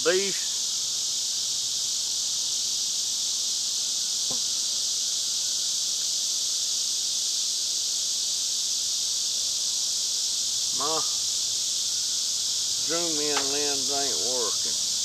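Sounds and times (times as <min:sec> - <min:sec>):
katydids buzzing: 0:00.0 - 0:15.0
faint tap: 0:13.3 - 0:13.6.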